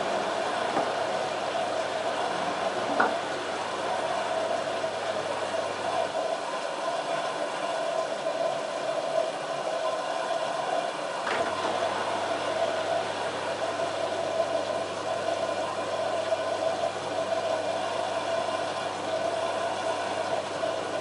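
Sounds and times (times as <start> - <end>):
washing machine humming: 0.0 - 21.0
washing machine whine: 0.0 - 21.0.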